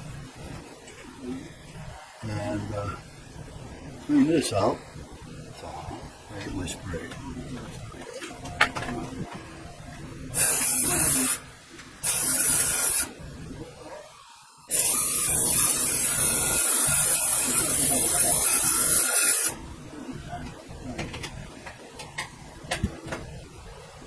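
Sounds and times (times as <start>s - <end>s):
aerosol spray can hissing: 10.4s - 11.4s, 12.0s - 13.1s, 14.7s - 19.6s.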